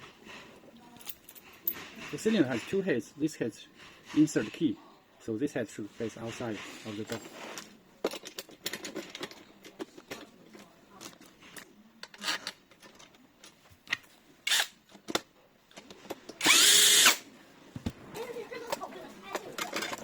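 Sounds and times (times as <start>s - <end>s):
lock parts clicking and knocking: 8.0s - 10.3s
cordless drill burst: 14.5s - 14.8s, 16.4s - 17.3s.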